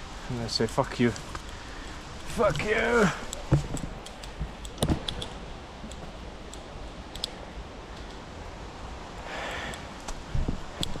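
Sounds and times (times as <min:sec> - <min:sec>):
background hiss: 0:00.0 - 0:11.0
footsteps on forest path: 0:00.8 - 0:05.0
light clicks: 0:02.2 - 0:08.2, 0:10.8 - 0:11.0
dull thump: 0:02.4 - 0:05.1.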